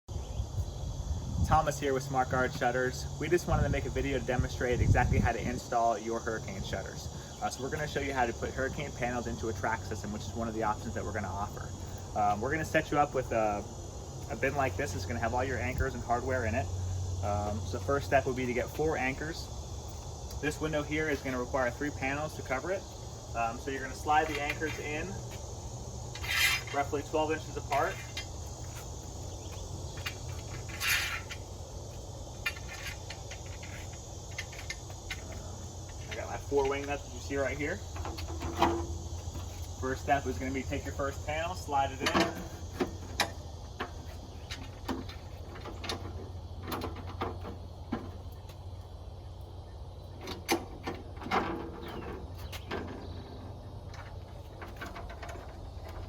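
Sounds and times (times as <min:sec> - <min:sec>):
steady low hum: 0:00.1 - 0:56.0
short metal scrape: 0:26.1 - 0:27.1, 0:30.4 - 0:31.4
metal panel clanking and rattling: 0:32.4 - 0:39.0, 0:42.0 - 0:48.2, 0:50.2 - 0:56.0.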